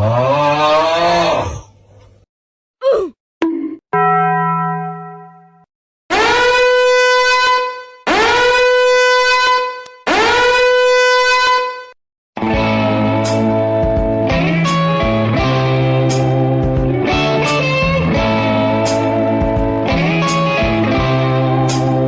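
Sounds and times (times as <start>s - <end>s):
long horn blasts: 6.1s - 11.9s
guitar music: 12.4s - 22.0s.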